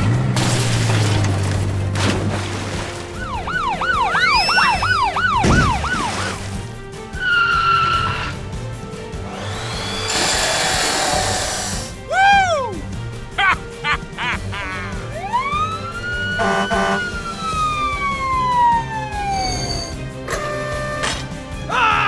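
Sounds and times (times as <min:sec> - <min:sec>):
background music: 0:00.0 - 0:22.0
whistle glide: 0:03.3 - 0:05.9
cartoon wobbling whoops: 0:03.7 - 0:06.1, 0:12.1 - 0:12.8
horn-like tone: 0:16.4 - 0:17.2.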